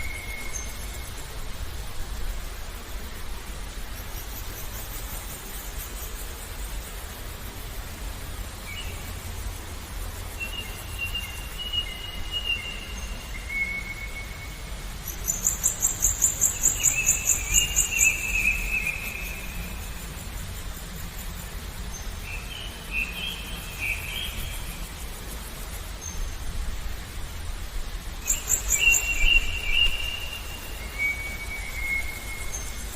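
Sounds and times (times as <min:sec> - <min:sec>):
songbirds whistling: 0:10.3 - 0:20.0, 0:28.2 - 0:32.9.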